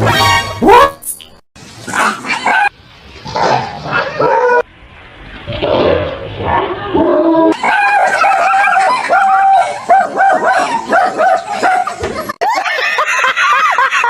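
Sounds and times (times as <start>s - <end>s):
dogs barking and yelping: 1.8s - 4.7s, 7.5s - 13.9s
dog giving high yelps: 7.6s - 12.0s.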